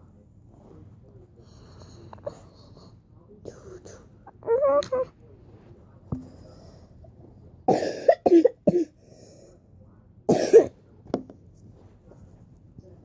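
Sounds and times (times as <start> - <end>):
child making cough-like bursts: 10.3 - 10.7.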